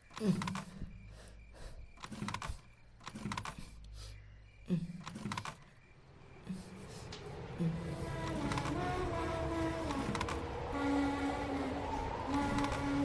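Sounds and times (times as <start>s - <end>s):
low hum: 4.2s - 13.0s.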